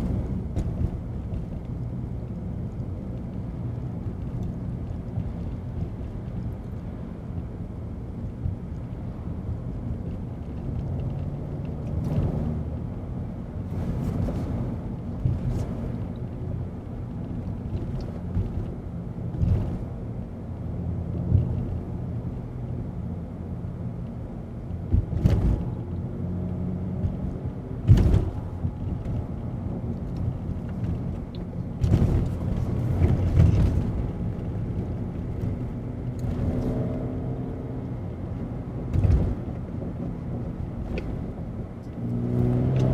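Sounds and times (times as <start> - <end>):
car engine drone from cabin: 0.0 - 42.9
short thumps: 27.8 - 29.2.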